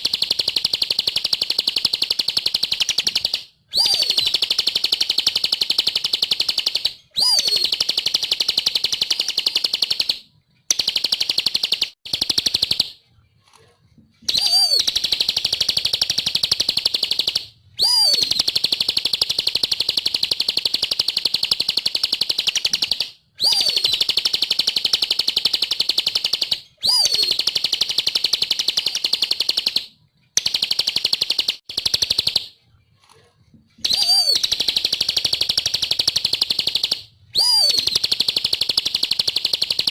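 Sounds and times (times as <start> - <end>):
bird singing fast chattering notes: 0.0 - 12.9, 14.3 - 32.5, 33.8 - 39.9
bird rising whistle: 2.8 - 10.0, 14.3 - 20.6, 23.4 - 24.2, 26.2 - 28.0, 33.8 - 39.8.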